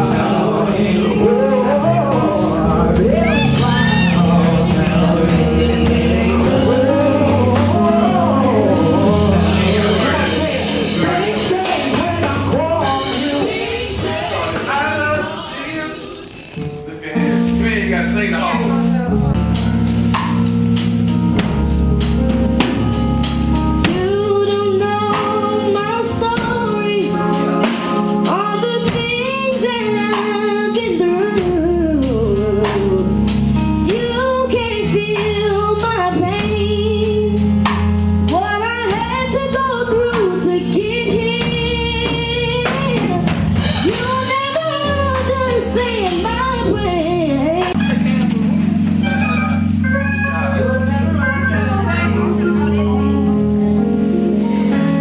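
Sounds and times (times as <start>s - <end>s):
drum kit and bass: 0.0s - 15.5s, 16.5s - 55.0s
person singing: 0.0s - 15.6s.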